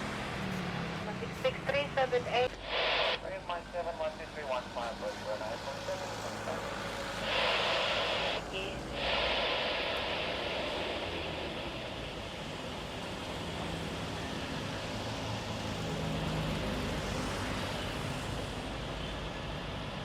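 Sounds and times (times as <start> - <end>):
jet engine rushing: 2.3 - 3.6, 5.0 - 14.4.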